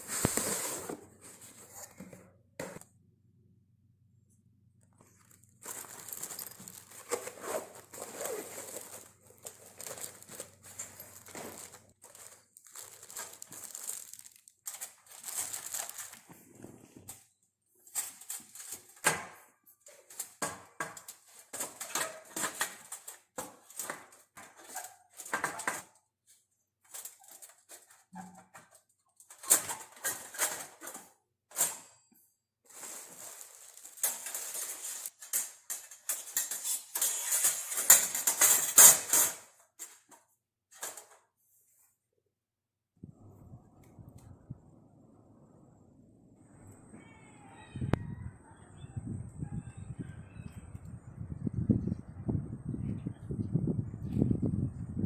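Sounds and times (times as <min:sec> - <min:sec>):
plastic packaging crinkling: 0:04.9 - 0:16.6, 0:32.7 - 0:39.4.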